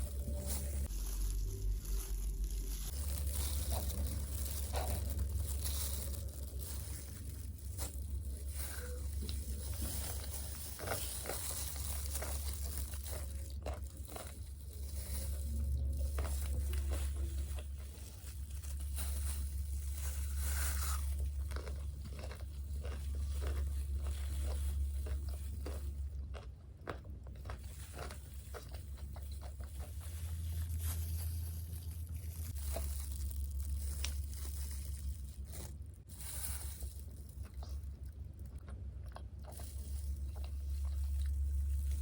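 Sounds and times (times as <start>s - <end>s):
crunching and chewing fried food: 0.0s - 42.0s
steady low hum: 0.0s - 42.0s.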